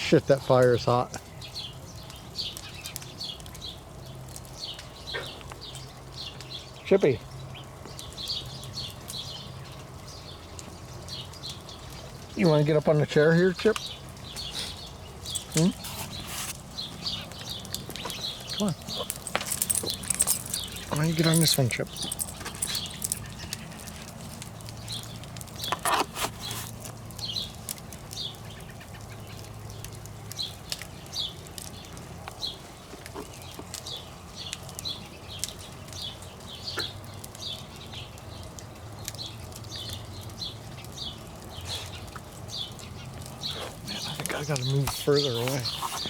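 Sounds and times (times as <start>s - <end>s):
campfire crackling and popping: 0.1s - 46.0s
bird chirping: 13.8s - 24.0s.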